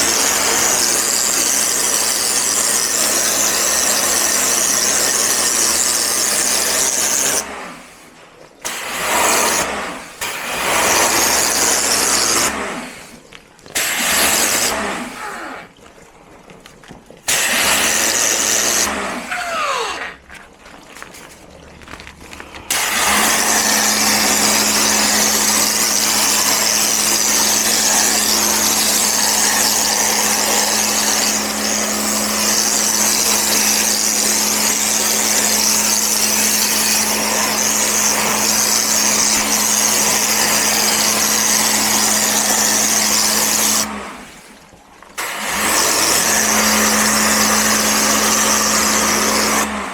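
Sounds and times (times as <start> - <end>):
cleaning machine motor humming: 17.3 - 20.2, 22.6 - 44.1, 45.4 - 49.9.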